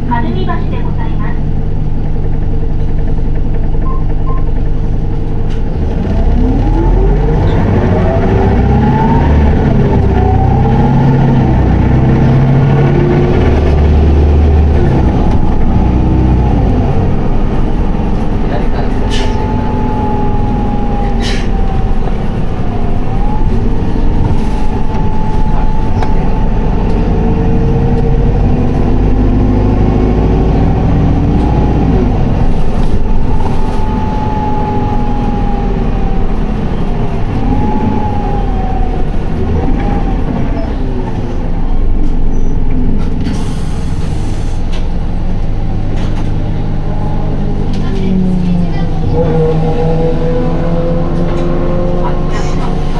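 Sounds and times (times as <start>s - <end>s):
diesel bus engine: 0.0s - 52.9s
road rumble: 0.0s - 52.9s
wavering whine: 6.1s - 41.4s.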